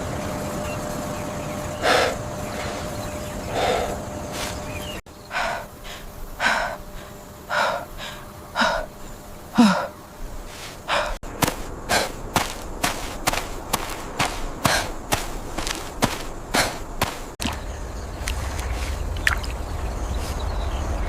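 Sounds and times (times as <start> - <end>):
person gasping and grunting: 9.6 - 10.0, 10.8 - 12.5.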